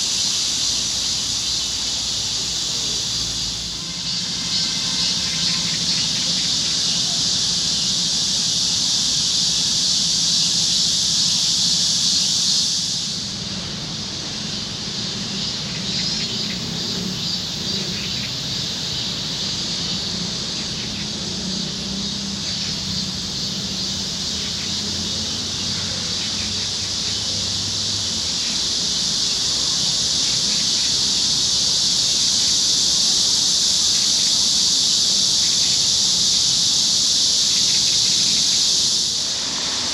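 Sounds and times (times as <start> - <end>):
cicadas buzzing: 0.0 - 39.9.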